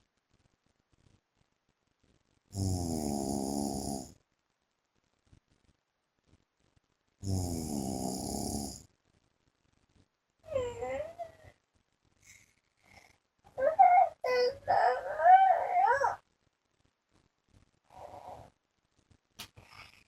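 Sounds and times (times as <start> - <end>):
man snoring: 2.5 - 4.1, 7.2 - 8.8
child making high vocal sounds: 10.5 - 11.5, 13.5 - 16.2.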